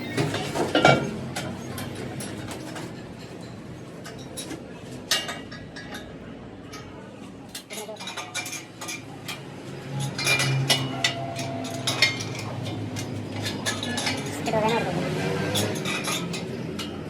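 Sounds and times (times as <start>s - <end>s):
steel clinking on steel: 10.0s - 14.8s.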